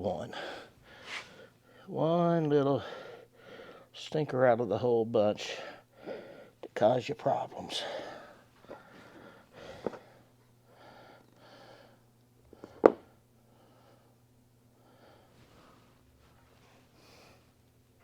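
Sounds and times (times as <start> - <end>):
low steady hum: 0.0 - 18.0
man breathing hard through nose: 0.4 - 1.9, 2.8 - 3.9, 5.7 - 6.6, 7.8 - 12.8, 13.4 - 14.2, 14.8 - 16.0.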